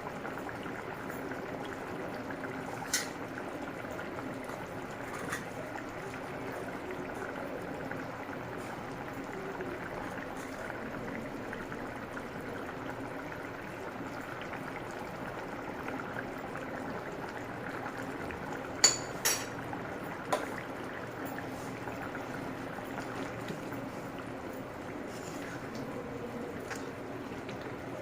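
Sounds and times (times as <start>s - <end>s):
curry bubbling in a pot: 0.0s - 28.0s
utensil clinking against pot: 18.8s - 19.5s.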